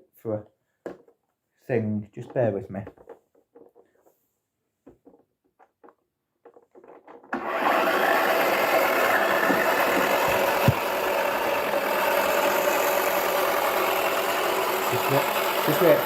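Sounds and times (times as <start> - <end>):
small electric motor running: 7.4 - 16.0.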